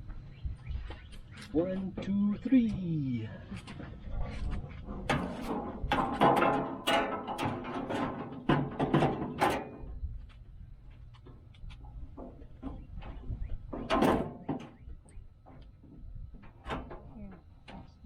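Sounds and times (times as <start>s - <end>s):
metal tool cart clanking and rattling: 4.4s - 10.0s, 12.1s - 14.8s.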